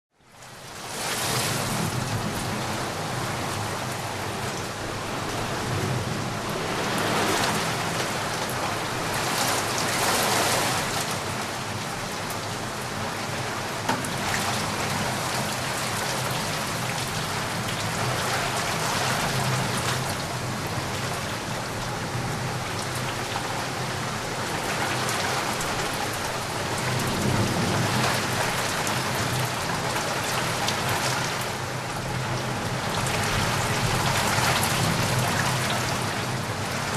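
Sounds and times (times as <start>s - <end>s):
heavy rain falling: 0.3s - 36.9s.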